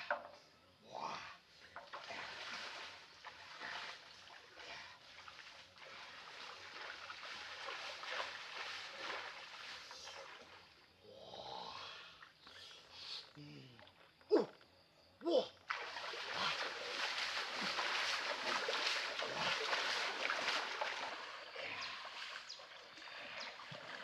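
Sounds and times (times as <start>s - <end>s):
water splashing and trickling: 1.6s - 11.2s, 15.6s - 24.0s.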